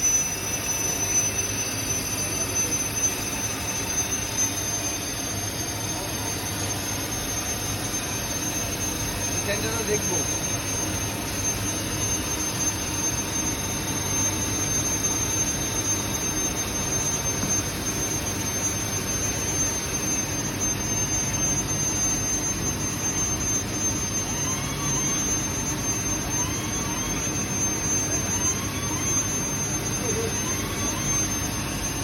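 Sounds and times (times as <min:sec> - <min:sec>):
machinery drone with high whine: 0:00.0 - 0:32.0.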